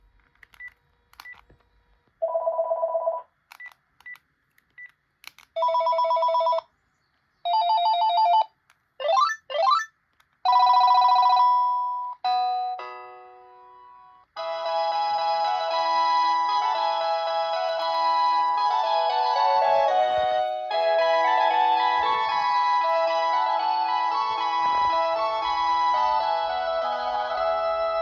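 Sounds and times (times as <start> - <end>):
cordless phone ringtones: 5.6 - 6.7, 7.5 - 9.9, 10.5 - 12.8.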